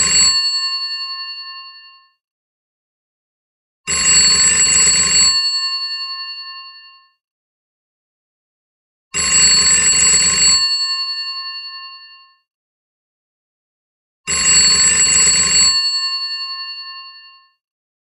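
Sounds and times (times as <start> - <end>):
telephone bell ringing: 0.0 - 2.2, 3.9 - 7.2, 9.2 - 12.5, 14.3 - 17.6.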